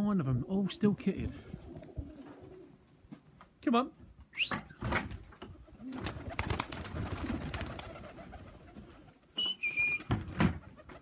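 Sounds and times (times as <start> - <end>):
pigeons cooing: 1.3 - 2.8
two-note whistle: 9.4 - 10.1.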